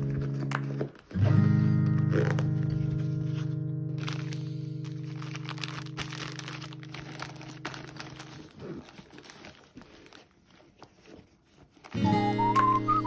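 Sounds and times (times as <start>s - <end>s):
faint crinkling and crunching: 0.0s - 12.0s
acoustic guitar and whistled melody: 11.9s - 13.0s
background music: 12.0s - 13.0s.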